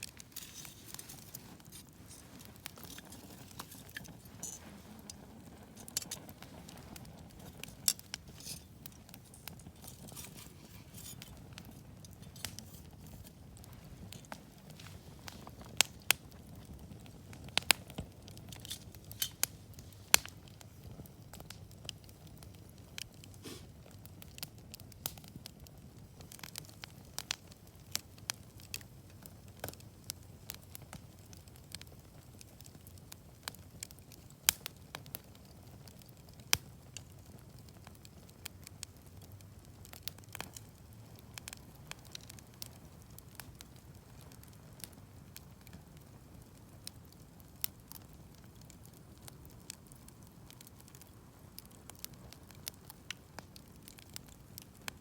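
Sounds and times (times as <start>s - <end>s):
sharp fire pops: 0.0s - 25.6s
campfire crackling: 0.0s - 55.0s.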